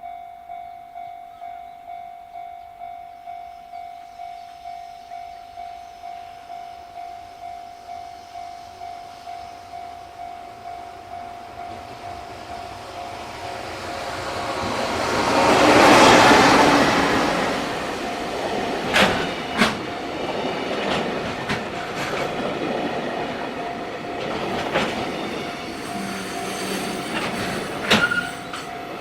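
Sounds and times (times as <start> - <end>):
freight train passing: 0.0 - 29.0
wheels clicking over rail joints: 15.8 - 26.0, 27.0 - 29.0.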